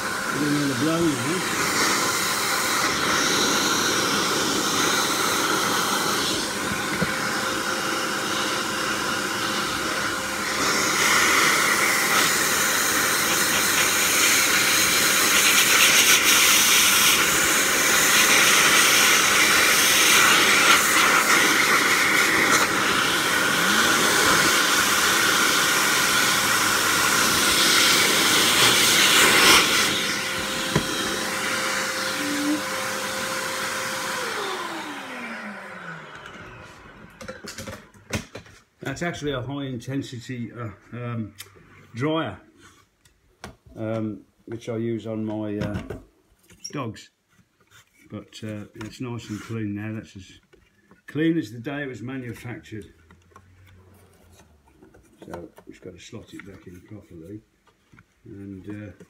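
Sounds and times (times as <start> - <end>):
dryer blowing air: 0.0 - 38.4.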